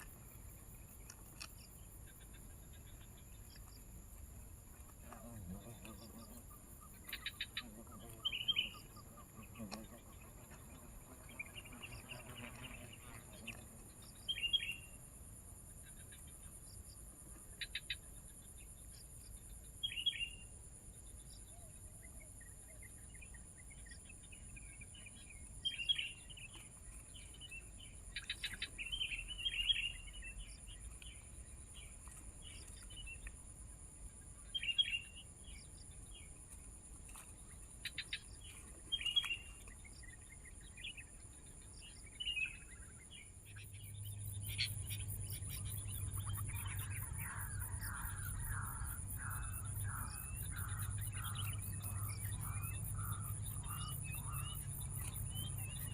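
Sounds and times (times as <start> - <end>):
bulbuls chirping: 0.0 - 14.9, 37.5 - 55.9.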